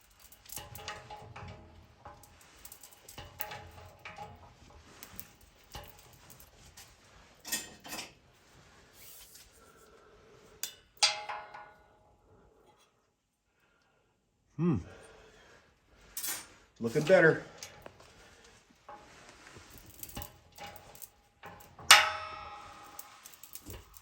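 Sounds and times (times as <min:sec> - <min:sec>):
steel clanking and clinking: 0:00.0 - 0:09.5, 0:10.5 - 0:12.0, 0:16.1 - 0:24.0
loud metallic clang: 0:21.8 - 0:23.5.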